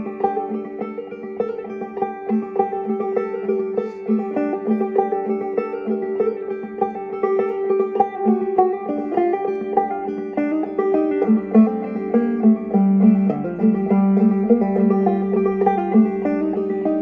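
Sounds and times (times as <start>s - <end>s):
banjo plucked notes: 0.0s - 17.0s.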